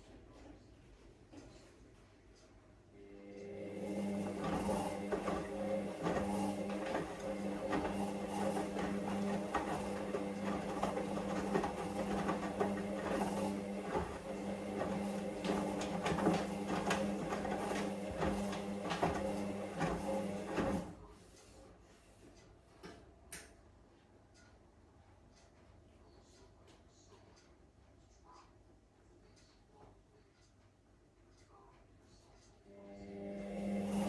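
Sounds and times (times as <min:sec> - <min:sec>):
washing machine motor hum: 0:03.0 - 0:21.3, 0:32.7 - 0:34.0.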